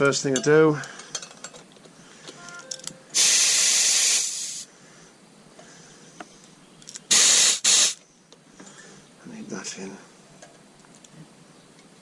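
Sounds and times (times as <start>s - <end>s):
compressed air hissing: 3.1s - 4.7s, 7.1s - 8.0s.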